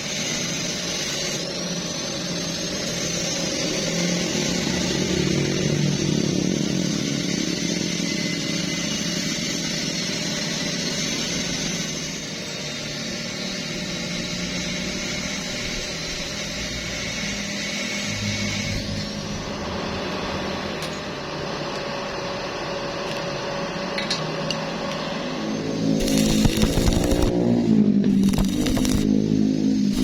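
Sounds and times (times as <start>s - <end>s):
motor running: 26.0s - 27.4s, 28.0s - 29.1s.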